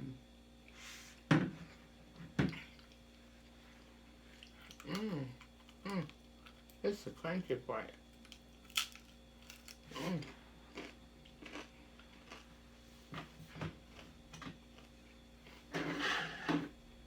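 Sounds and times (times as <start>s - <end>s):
crunchy chicken skin chewing: 4.3s - 6.8s, 8.1s - 12.7s, 13.8s - 15.6s
person humming with pleasure: 4.9s - 6.1s.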